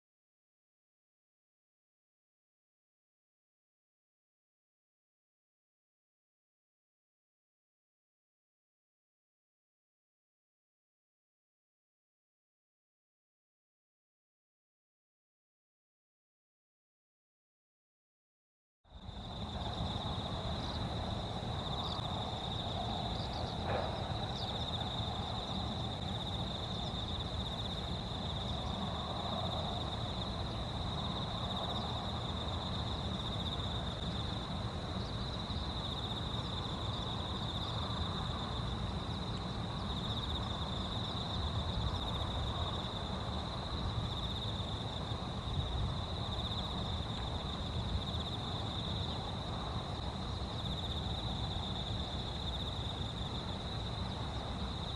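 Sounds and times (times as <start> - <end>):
insects trilling: 19.0 - 54.9
wind rumble: 19.0 - 54.9.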